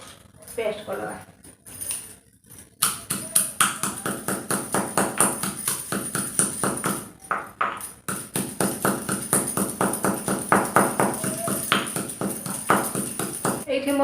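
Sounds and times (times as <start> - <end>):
pestle pounding in a mortar: 2.8 - 13.7.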